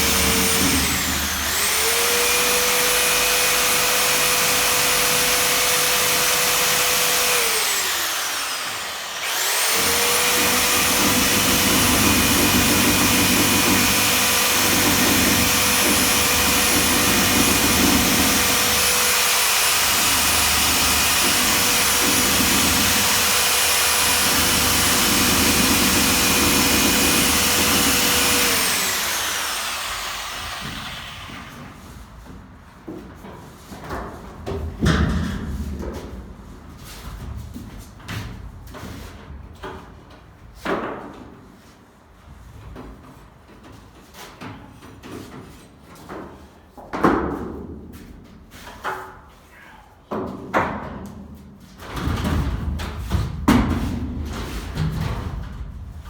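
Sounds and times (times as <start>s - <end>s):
power tool motor whining: 0.0s - 31.5s.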